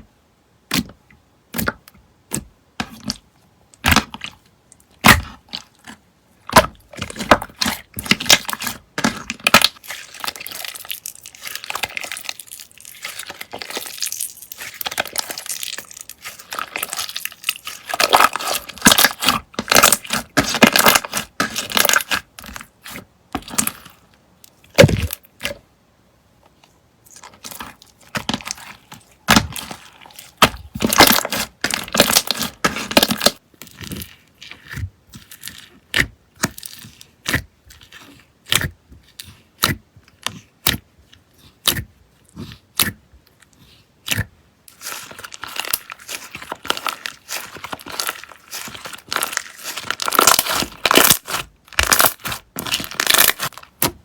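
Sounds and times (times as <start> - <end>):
slime popping and crackling: 6.5 - 24.0, 24.7 - 25.6, 27.1 - 34.1, 44.1 - 54.0.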